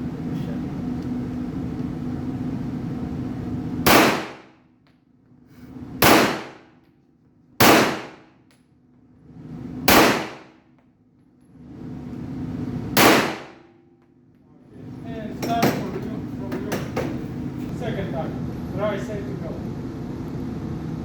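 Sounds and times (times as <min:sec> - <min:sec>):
gunshots with ringing tail: 0:03.8 - 0:04.5, 0:06.0 - 0:06.6, 0:07.6 - 0:08.2, 0:09.9 - 0:10.5, 0:13.0 - 0:13.6
steady low rumble: 0:17.1 - 0:21.0.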